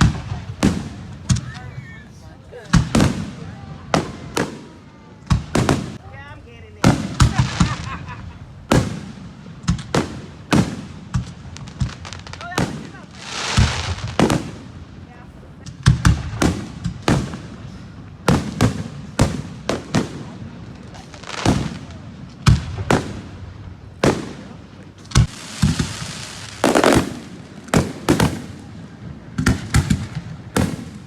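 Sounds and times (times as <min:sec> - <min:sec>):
fireworks bangs: 0:00.0 - 0:31.0.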